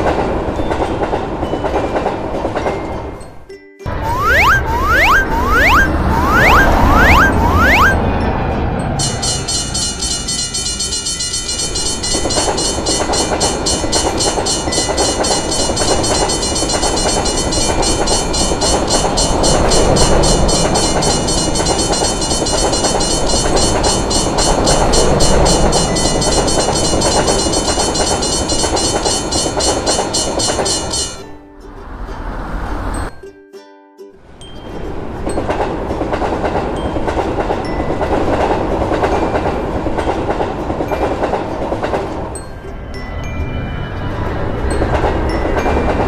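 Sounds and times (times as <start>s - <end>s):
train passing with rushing rumble: 0.0s - 33.2s, 34.2s - 46.0s
level-crossing bell ringing: 3.9s - 31.2s.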